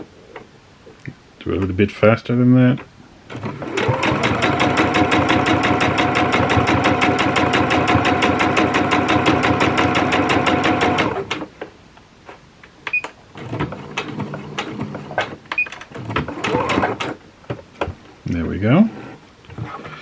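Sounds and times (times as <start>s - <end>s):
sewing machine stitching: 3.3s - 11.5s, 13.4s - 17.2s.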